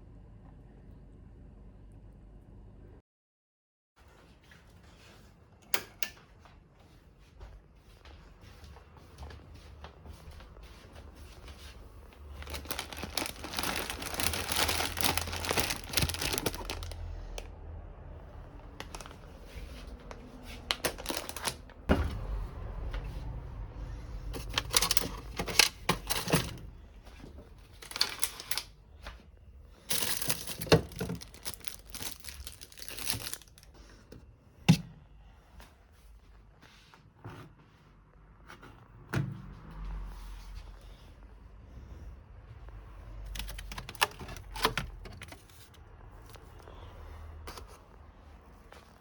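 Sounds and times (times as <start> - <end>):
packaging crinkling: 12.2 - 17.5, 18.7 - 21.9, 24.3 - 26.7, 27.5 - 28.8, 29.8 - 33.7, 43.3 - 45.7.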